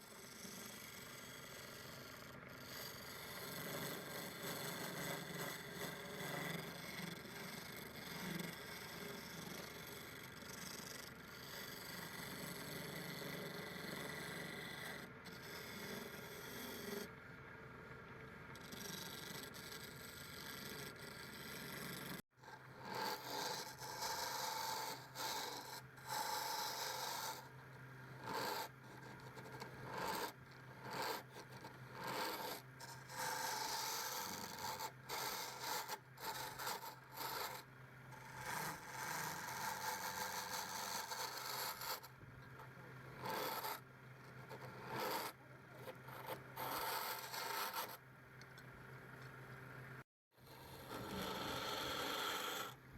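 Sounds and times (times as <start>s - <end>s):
turning tool scraping wood: 2.6s - 17.0s, 38.2s - 48.0s.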